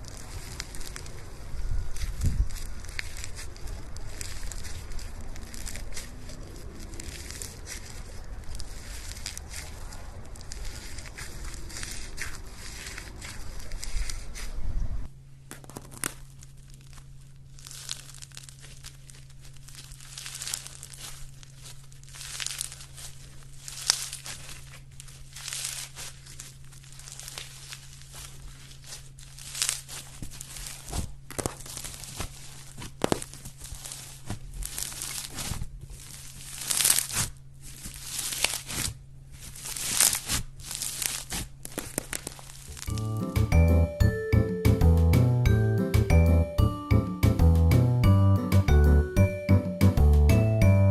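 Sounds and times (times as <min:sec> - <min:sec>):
slime crackling and tearing: 0:00.0 - 0:14.6, 0:15.5 - 0:43.0.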